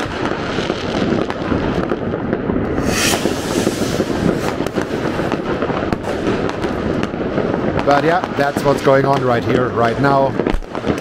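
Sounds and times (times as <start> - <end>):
fireworks crackling and banging: 0.0 - 11.0
sharp hiss: 2.7 - 5.3.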